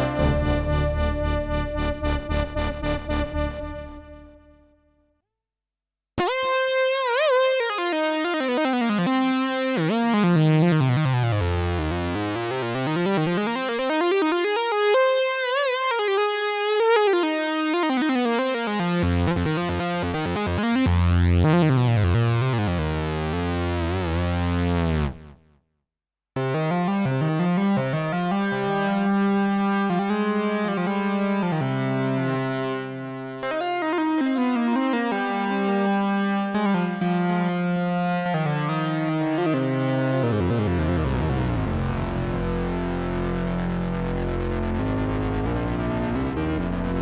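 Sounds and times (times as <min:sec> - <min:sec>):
low bass notes: 0:00.0 - 0:04.6, 0:19.0 - 0:25.3, 0:40.2 - 0:47.0.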